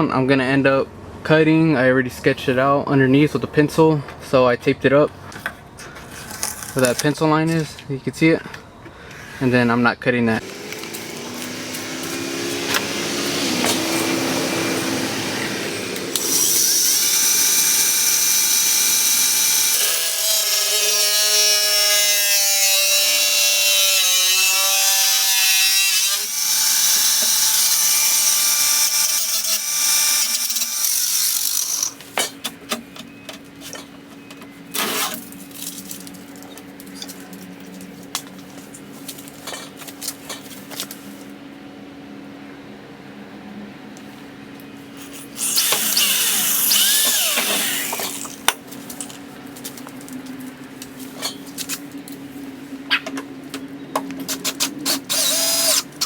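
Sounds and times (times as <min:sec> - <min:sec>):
electric power tool cutting: 0:10.4 - 0:32.0, 0:45.2 - 0:48.4, 0:54.4 - 0:56.0.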